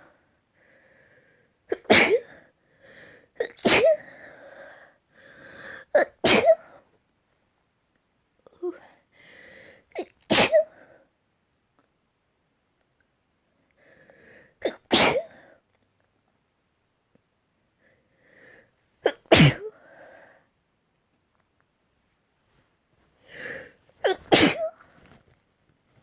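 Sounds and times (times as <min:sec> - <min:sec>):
person sneezing: 0:01.7 - 0:02.4, 0:03.4 - 0:04.0, 0:06.0 - 0:06.7, 0:10.0 - 0:10.7, 0:14.6 - 0:15.4, 0:19.1 - 0:19.8, 0:23.3 - 0:24.8.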